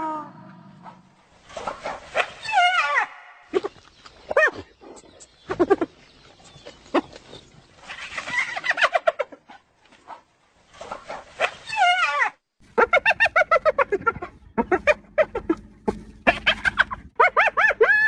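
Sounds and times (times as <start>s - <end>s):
hyena giggling call: 3.5s - 7.4s, 12.7s - 18.0s.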